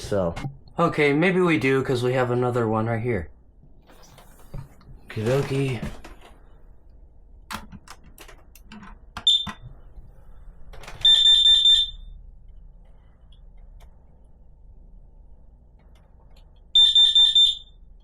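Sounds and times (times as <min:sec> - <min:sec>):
smoke alarm beep: 0:09.2 - 0:09.7, 0:11.0 - 0:12.2, 0:16.7 - 0:18.0.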